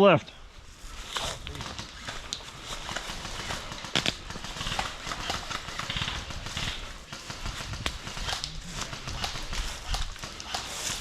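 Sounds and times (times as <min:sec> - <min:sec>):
sharp twig cracks: 0:07.8 - 0:11.0.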